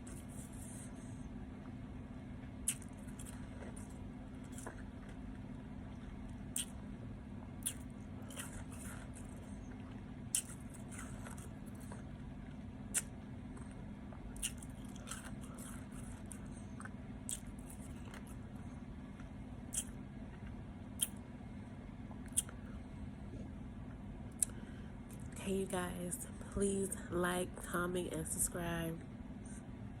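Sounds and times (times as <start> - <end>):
steady low hum: 0.0 - 30.0
ice crunching between teeth: 10.3 - 11.6.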